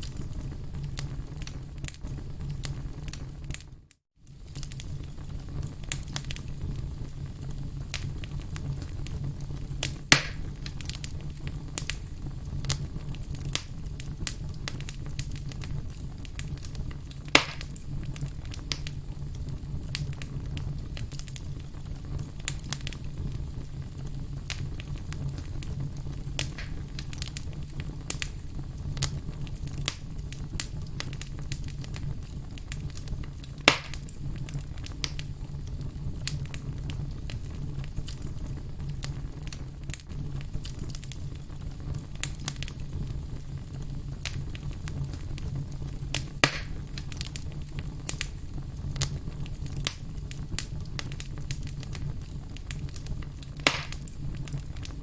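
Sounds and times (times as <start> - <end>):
fire roaring and crackling: 0.0 - 55.0
loud sharp pops: 10.1 - 10.5, 17.3 - 17.8, 26.4 - 27.0, 33.6 - 34.0, 46.4 - 47.0, 53.6 - 54.1.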